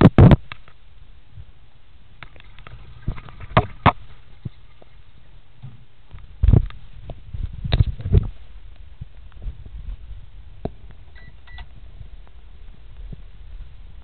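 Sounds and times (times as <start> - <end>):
microwave oven beeping: 11.2 - 11.7.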